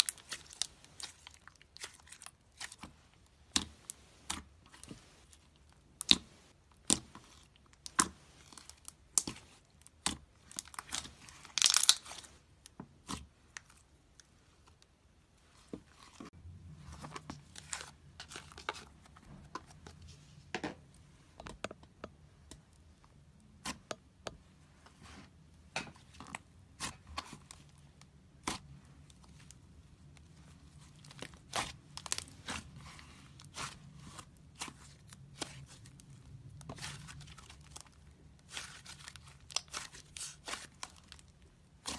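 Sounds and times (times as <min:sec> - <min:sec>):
slime crackling and tearing: 0:00.0 - 0:02.9, 0:06.8 - 0:12.3, 0:30.8 - 0:41.9
slime clicking and popping: 0:11.6 - 0:12.0.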